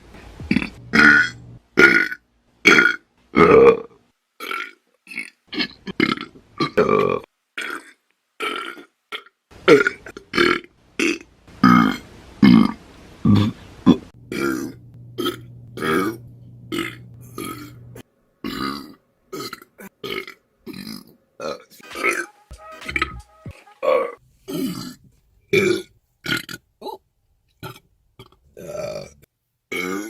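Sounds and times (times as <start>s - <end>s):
music: 0.0s - 1.6s, 21.8s - 24.2s
woman burping: 0.5s - 7.8s, 14.3s - 17.8s.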